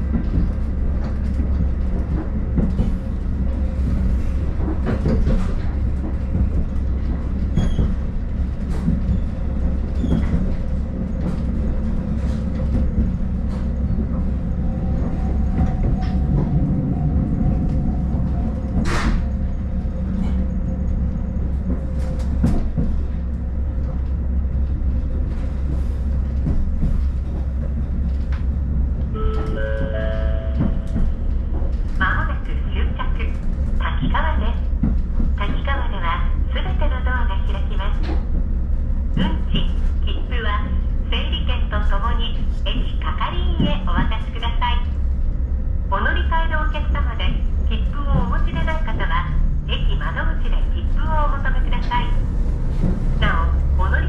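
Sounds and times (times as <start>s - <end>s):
train engine rumble: 0.0s - 54.0s.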